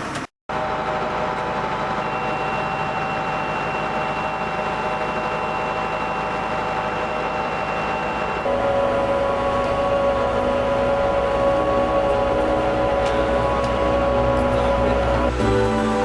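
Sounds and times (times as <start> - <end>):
feed mixer wagon running: 0.0 - 16.0
high whine from drive: 0.5 - 16.0.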